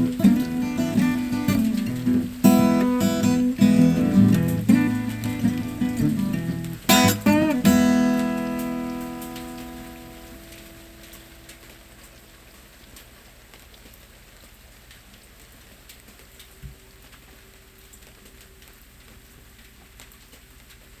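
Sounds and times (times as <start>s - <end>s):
acoustic guitar chord ringing: 0.0s - 12.0s
steady rain: 0.0s - 21.0s.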